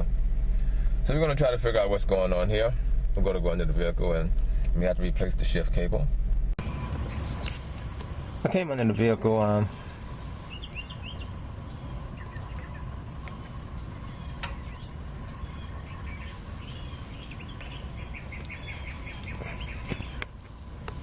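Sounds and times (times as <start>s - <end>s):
low background rumble: 0.0s - 21.0s
small birds chirping: 6.6s - 21.0s.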